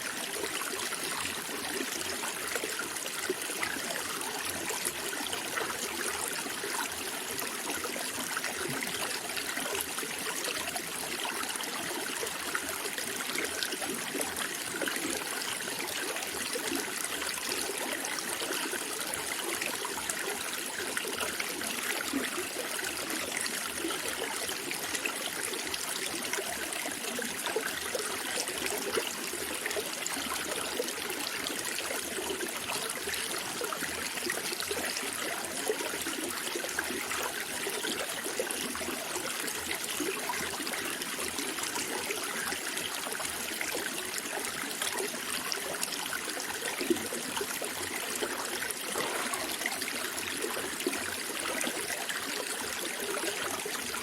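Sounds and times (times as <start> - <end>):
water trickling: 36.7 - 54.0.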